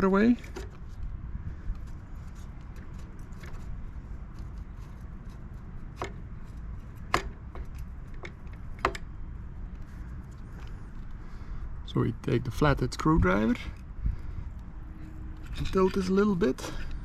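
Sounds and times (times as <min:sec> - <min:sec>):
low steady rumble: 0:00.0 - 0:17.0
sharp knocks: 0:07.1 - 0:09.0.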